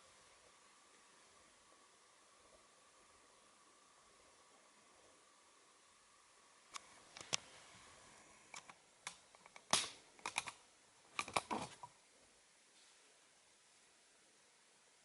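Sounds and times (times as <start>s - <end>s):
faint steady hiss: 0.0s - 15.0s.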